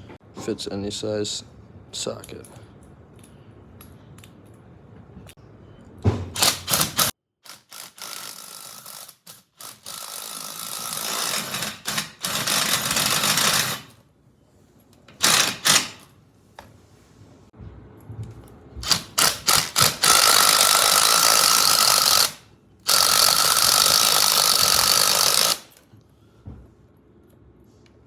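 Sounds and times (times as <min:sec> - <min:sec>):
power driver driving fasteners: 0:06.4 - 0:14.0, 0:15.1 - 0:16.1, 0:18.8 - 0:25.9.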